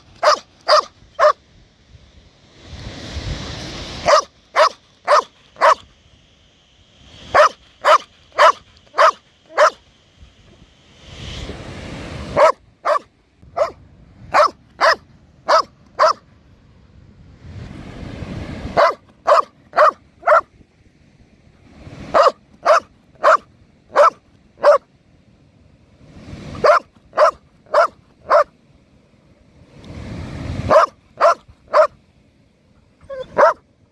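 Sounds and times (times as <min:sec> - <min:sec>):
dog barking sharply: 0:00.2 - 0:01.4, 0:04.0 - 0:05.8, 0:07.3 - 0:09.8, 0:12.4 - 0:16.2, 0:18.8 - 0:20.5, 0:22.1 - 0:24.9, 0:26.6 - 0:28.5, 0:30.7 - 0:32.0, 0:33.1 - 0:33.6
rough rising noise: 0:02.2 - 0:13.4.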